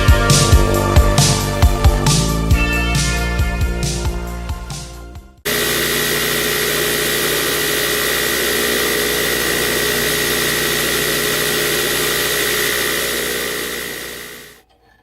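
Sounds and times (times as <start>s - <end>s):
power tool motor whining: 5.5s - 14.6s.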